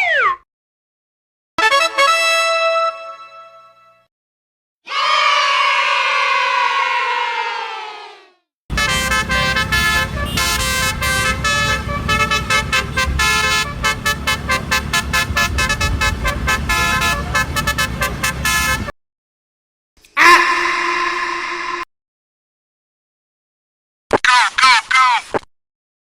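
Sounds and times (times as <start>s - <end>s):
cartoon vehicle horn tooting: 8.7s - 18.9s
steady low rumble: 8.7s - 18.9s.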